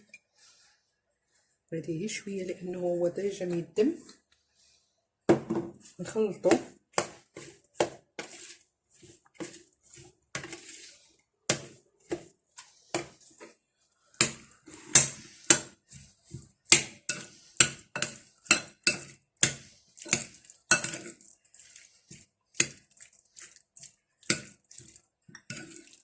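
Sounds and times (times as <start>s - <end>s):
utensils clinking against bowl: 17.1s - 21.2s, 24.3s - 26.0s.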